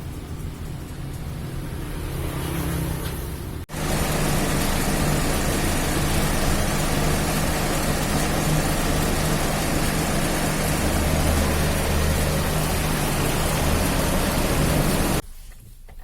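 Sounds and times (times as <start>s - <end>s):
car engine idling: 3.7s - 15.2s.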